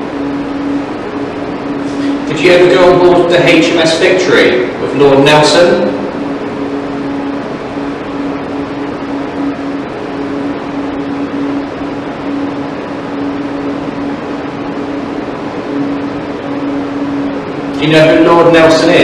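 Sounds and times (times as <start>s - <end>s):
mechanical hum: 0.0s - 19.0s.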